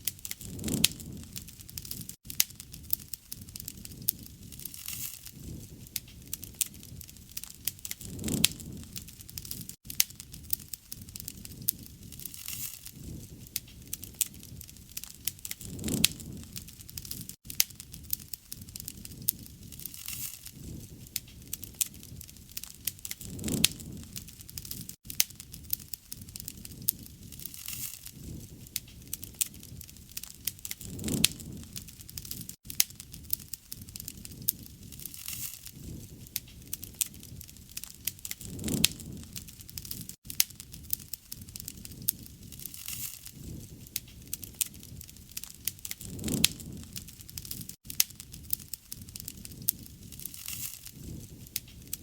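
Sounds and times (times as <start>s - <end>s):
low rush of flame: 0.0s - 52.0s
wood crackling and popping: 0.0s - 52.0s.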